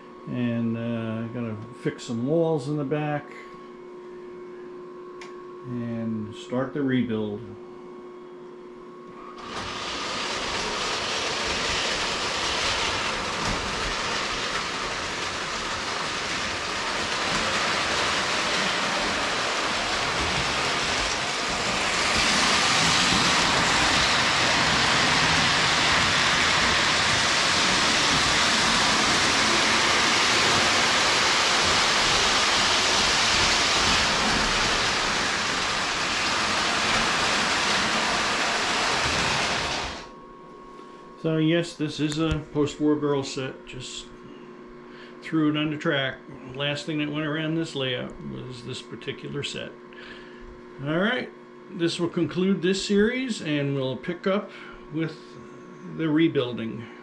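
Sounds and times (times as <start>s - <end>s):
toy train rumble and clatter: 9.4s - 40.1s.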